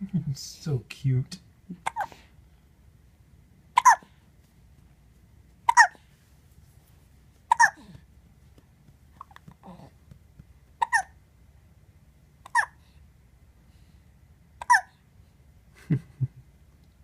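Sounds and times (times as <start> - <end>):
high-pitched hiccups: 1.7 - 2.2, 3.8 - 4.1, 5.6 - 6.0, 7.5 - 8.0, 10.8 - 11.2, 12.4 - 12.8, 14.6 - 15.0.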